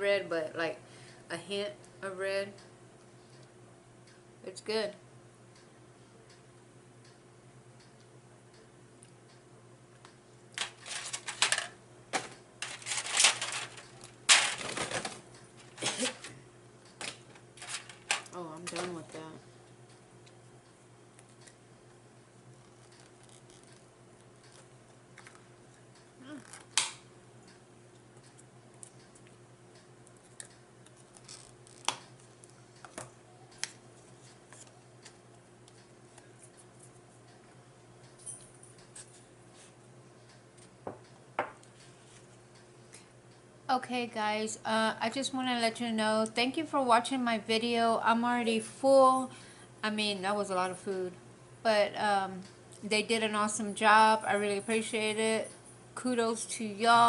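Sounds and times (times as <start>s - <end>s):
food packaging crinkling: 10.6s - 16.3s, 17.1s - 18.3s
eating and table sounds: 19.6s - 43.1s.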